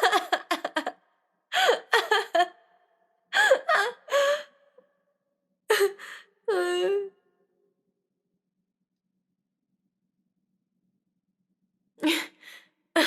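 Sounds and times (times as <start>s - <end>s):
woman laughing: 0.0s - 1.0s, 1.6s - 2.6s.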